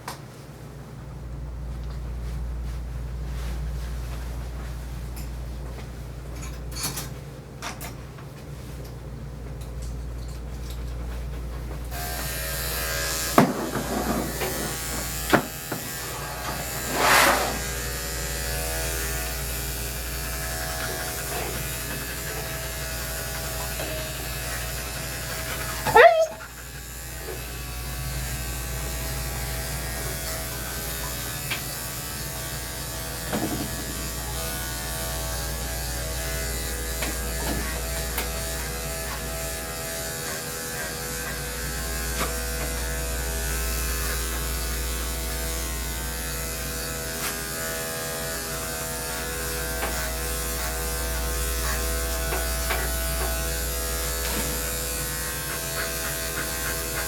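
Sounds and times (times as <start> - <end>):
electric clippers running: 11.8 - 57.0.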